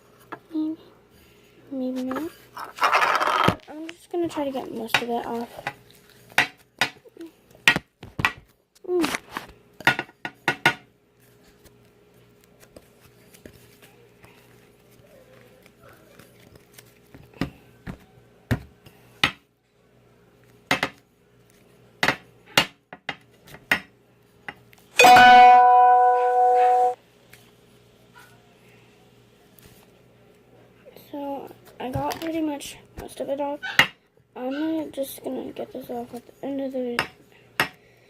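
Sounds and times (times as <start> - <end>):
loud steady pitched tone: 25.0 - 27.0.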